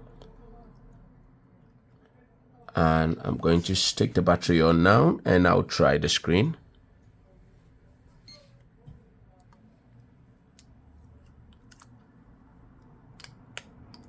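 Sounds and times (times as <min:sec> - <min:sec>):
low background hum: 0:00.0 - 0:14.0
small clicks of phone parts: 0:10.5 - 0:12.1.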